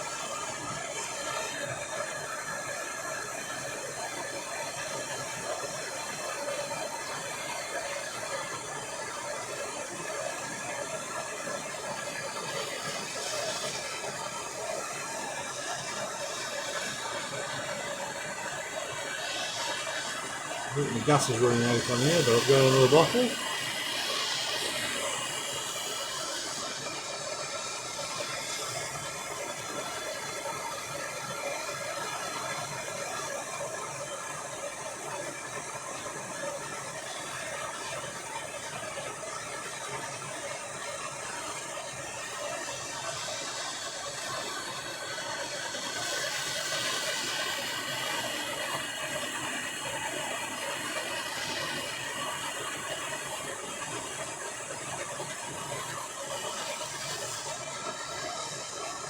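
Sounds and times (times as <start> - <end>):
blowtorch hissing: 6.4 - 32.9, 40.2 - 59.0.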